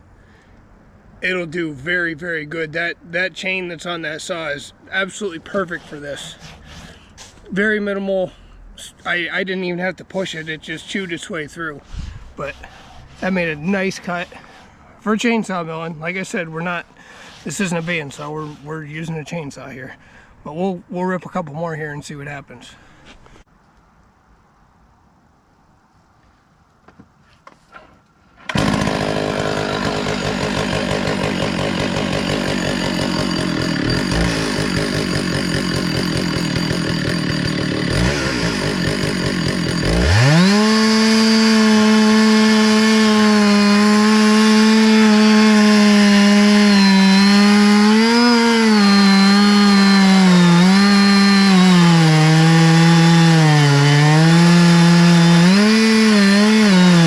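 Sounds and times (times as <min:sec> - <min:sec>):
chainsaw cutting through log: 0:05.5 - 0:07.1, 0:12.3 - 0:15.3, 0:16.0 - 0:18.8, 0:28.4 - 0:57.0
chainsaw idling and revving: 0:28.4 - 0:57.0.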